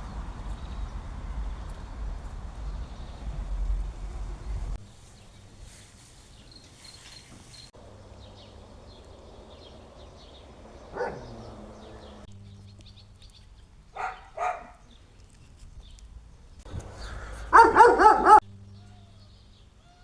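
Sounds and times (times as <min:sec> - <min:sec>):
dog barking: 0:10.8 - 0:12.2, 0:13.9 - 0:14.8, 0:17.0 - 0:18.5.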